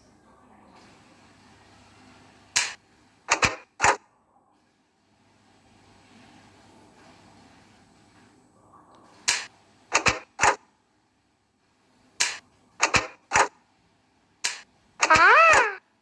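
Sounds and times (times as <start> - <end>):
short sharp pops: 2.6 - 4.0, 9.3 - 10.7, 12.2 - 13.6, 14.4 - 15.8.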